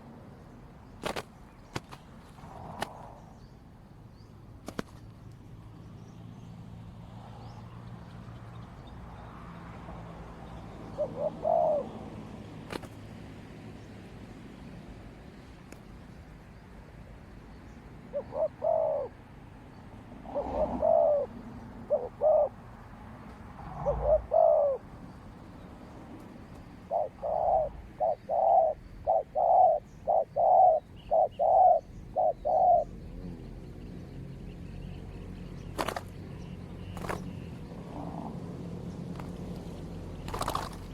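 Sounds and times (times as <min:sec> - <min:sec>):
dove cooing: 0:10.8 - 0:12.4, 0:18.1 - 0:19.2, 0:20.2 - 0:22.8, 0:23.6 - 0:25.2, 0:26.4 - 0:33.5.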